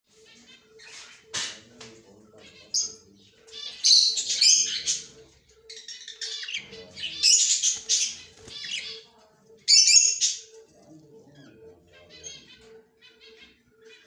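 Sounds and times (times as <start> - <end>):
parrot squawking: 2.7 - 9.1.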